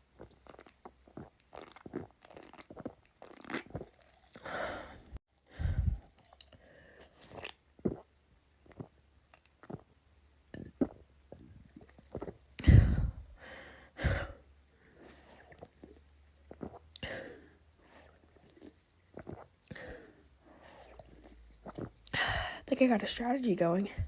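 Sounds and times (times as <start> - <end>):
person swallowing soda: 0.0 - 5.1, 5.7 - 13.4, 15.2 - 22.6
loud deep gulps: 0.0 - 6.5, 7.2 - 9.0, 9.6 - 14.4, 19.2 - 22.6.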